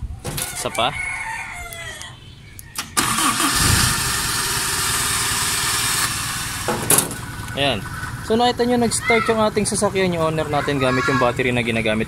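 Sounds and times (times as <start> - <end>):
engine cranking and running: 2.8 - 10.8.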